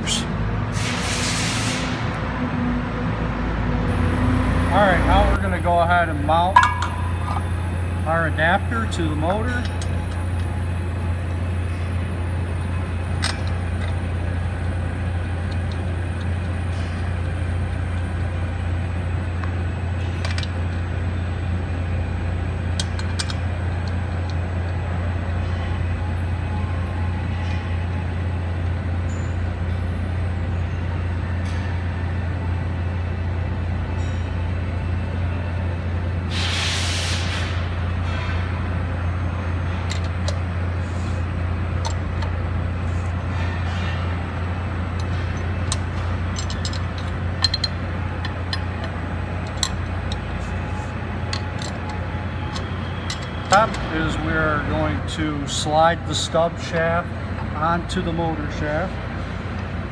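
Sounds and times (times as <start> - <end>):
short hiss: 0.0 - 2.2, 36.3 - 37.6
low machine hum: 0.0 - 59.9
metal parts and tools clinking: 22.8 - 24.4, 39.6 - 55.0.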